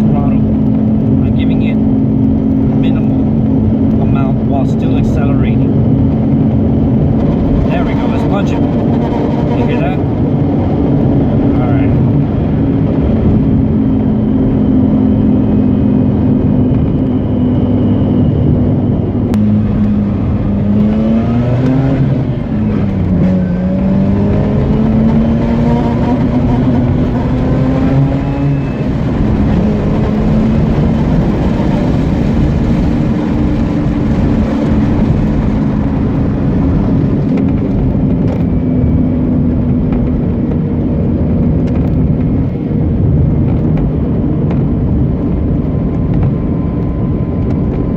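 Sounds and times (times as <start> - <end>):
rotary engine revving: 19.3 - 38.5.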